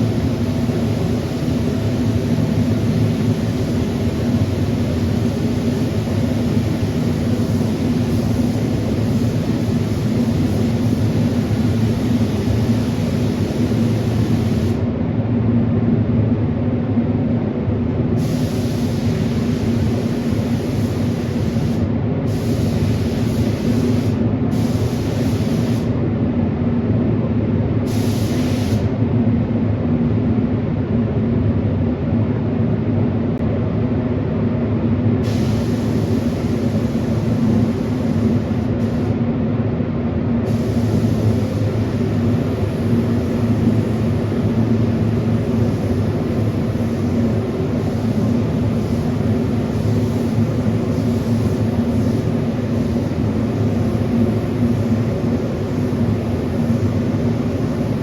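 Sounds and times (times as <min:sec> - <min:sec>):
paint spray gun hissing: 0:00.0 - 0:14.8, 0:18.2 - 0:25.9, 0:27.9 - 0:28.9, 0:35.2 - 0:39.2, 0:40.4 - 0:58.0
low machine hum: 0:00.0 - 0:18.2, 0:29.0 - 0:58.0.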